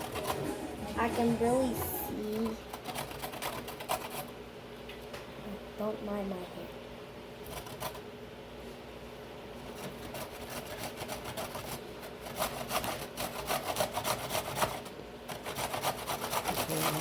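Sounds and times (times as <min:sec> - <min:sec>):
knife cutting vegetables on board: 0:09.8 - 0:17.0.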